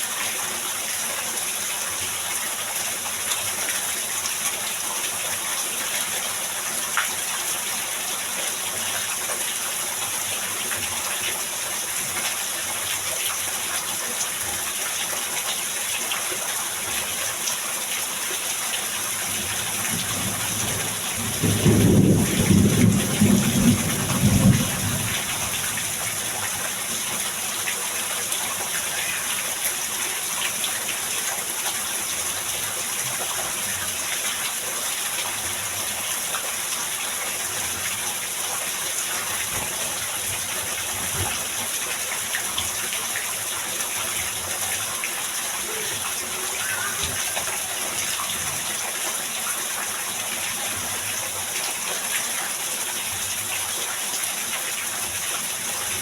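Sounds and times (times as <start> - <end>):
heavy rain pouring: 0.0 - 56.0.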